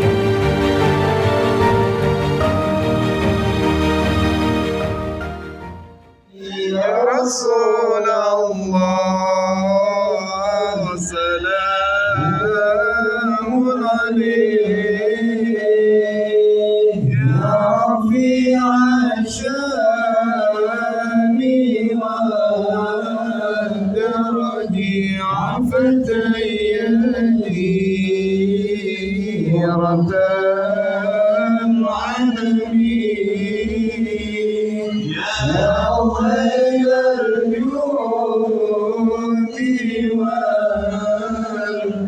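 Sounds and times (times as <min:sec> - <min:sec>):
man chanting devotional song: 0:06.3 - 0:42.0.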